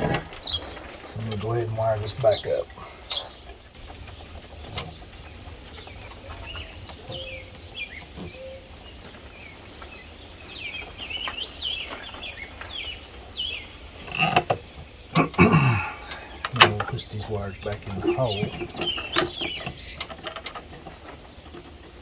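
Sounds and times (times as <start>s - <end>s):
knocks and handling noises: 0.0s - 9.9s, 14.0s - 22.0s
low wind rumble: 0.0s - 22.0s
small birds chirping: 0.0s - 22.0s
scattered clicks: 16.0s - 22.0s.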